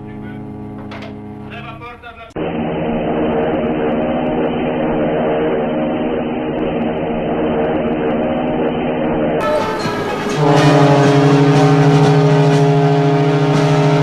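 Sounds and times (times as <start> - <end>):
ship's horn blast: 0.0 - 1.8, 9.4 - 14.0.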